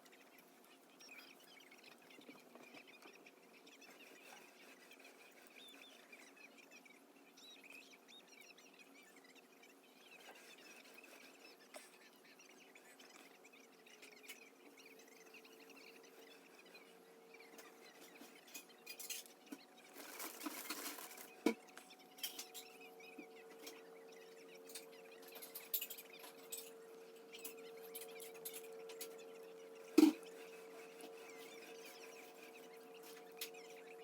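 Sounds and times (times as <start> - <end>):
steady low hum: 0.1 - 34.0
tableware clicks and rustles: 17.6 - 21.6, 22.2 - 22.8, 24.7 - 29.2.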